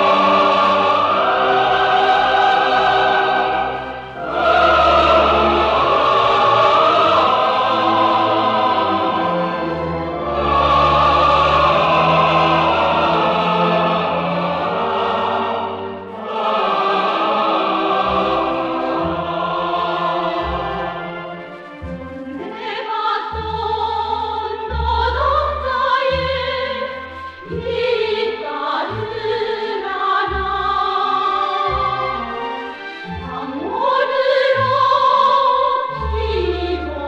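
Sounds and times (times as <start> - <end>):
choir singing: 0.0 - 37.0.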